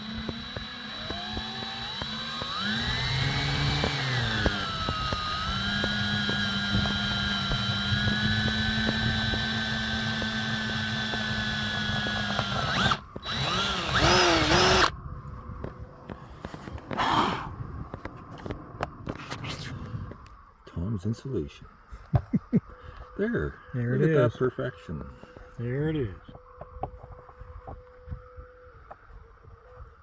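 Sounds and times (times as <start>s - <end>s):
power drill whining: 0.0s - 14.9s, 16.8s - 17.5s.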